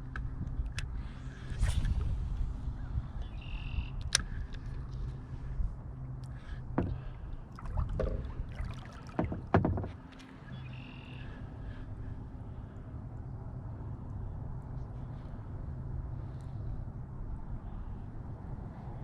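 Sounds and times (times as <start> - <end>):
water rumbling against hull: 4.7 - 11.4
knocks and clunks on kayak: 6.7 - 10.6.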